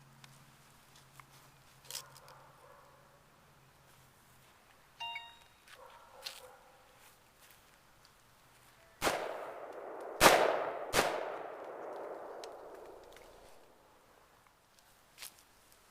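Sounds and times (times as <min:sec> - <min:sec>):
long gunshot echo: 0:09.0 - 0:13.5
rifle shots: 0:09.0 - 0:13.6.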